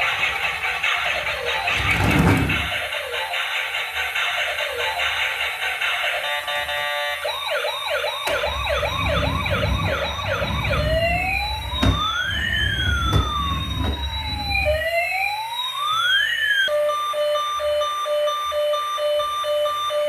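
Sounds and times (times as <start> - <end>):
toy siren yelp and wail: 6.7 - 9.0, 14.0 - 20.0.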